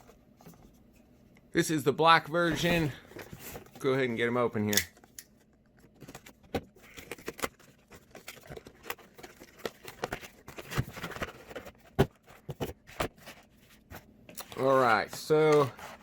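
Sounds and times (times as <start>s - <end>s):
packaging rustling: 5.8s - 16.0s.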